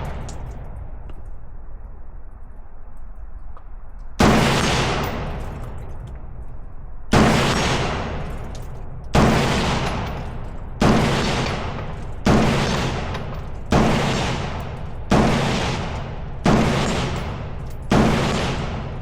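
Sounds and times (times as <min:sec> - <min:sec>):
gunshots with echo: 0:00.0 - 0:01.0, 0:04.2 - 0:06.0, 0:07.1 - 0:19.0.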